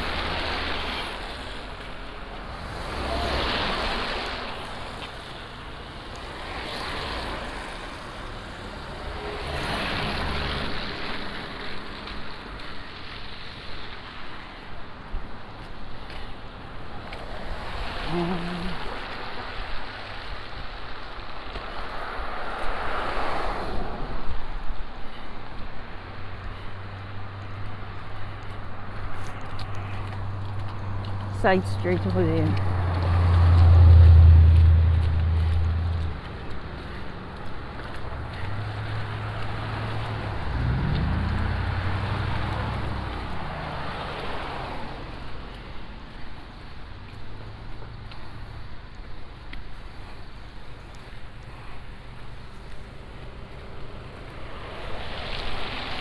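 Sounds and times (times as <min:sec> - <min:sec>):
vehicle passing: 0:00.0 - 0:13.4, 0:26.0 - 0:48.9
traffic hiss on slushy road: 0:00.0 - 0:56.0
car engine hum: 0:30.2 - 0:49.4.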